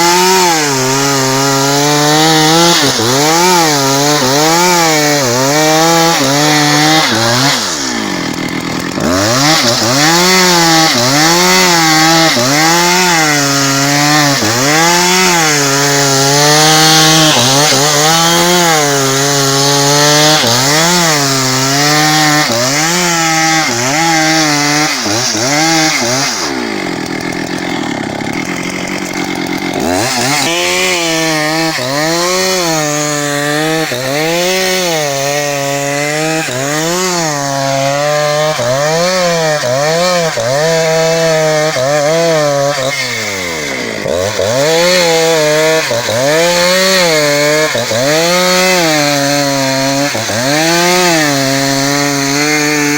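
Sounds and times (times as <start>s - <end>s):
chainsaw cutting a log: 0.0s - 52.9s.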